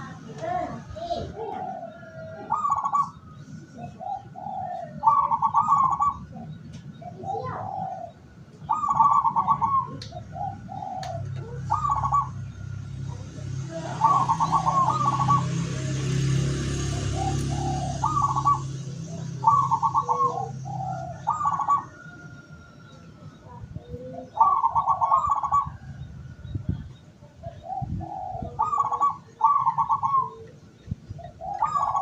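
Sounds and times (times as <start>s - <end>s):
doves cooing: 0.0s - 32.0s.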